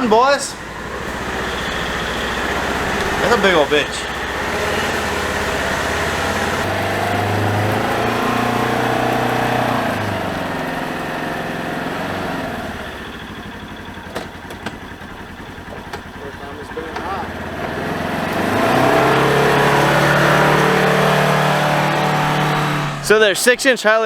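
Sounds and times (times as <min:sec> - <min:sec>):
utility vehicle engine running: 0:00.0 - 0:23.8.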